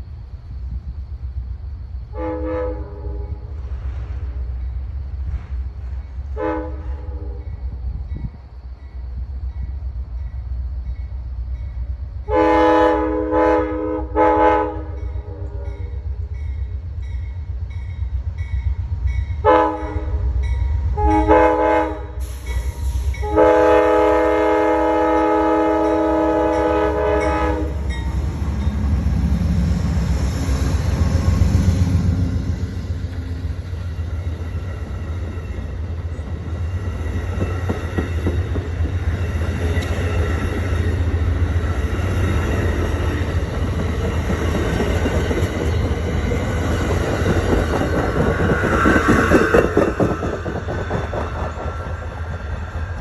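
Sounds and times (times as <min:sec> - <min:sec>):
train low rumble: 0:00.0 - 0:53.0
locomotive air horn blasts: 0:02.1 - 0:03.5, 0:06.4 - 0:07.4, 0:12.3 - 0:15.9, 0:19.4 - 0:22.4, 0:23.2 - 0:27.9.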